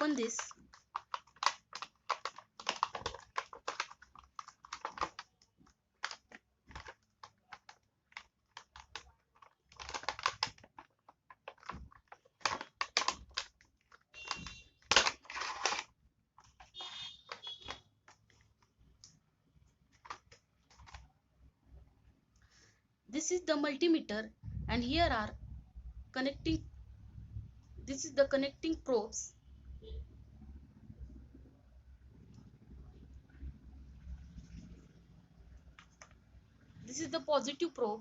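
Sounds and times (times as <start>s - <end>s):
packaging rustling: 0.3s - 18.8s, 19.9s - 21.1s.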